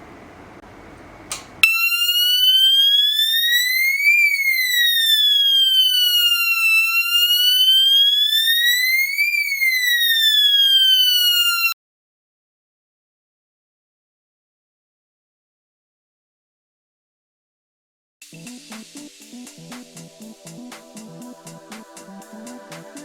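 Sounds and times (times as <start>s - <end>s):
siren click: 1.3s - 11.8s
siren slow wail: 1.6s - 11.8s.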